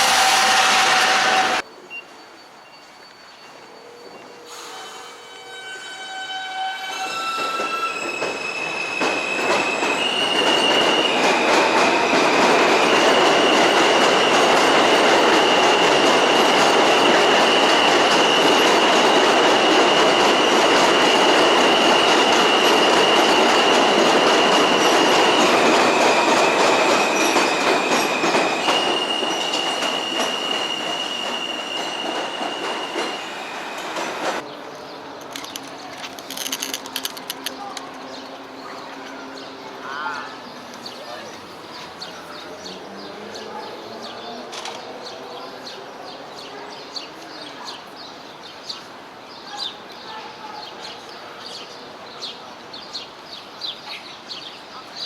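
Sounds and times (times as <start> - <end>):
high wheel squeal: 0.0 - 34.4
subway train rumbling past: 0.0 - 55.0.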